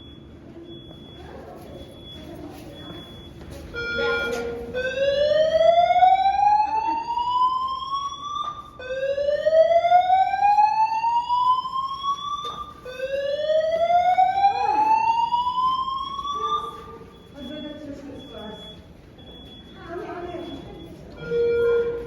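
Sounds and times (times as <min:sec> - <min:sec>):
fire alarm rising whoop: 0:04.8 - 0:16.9.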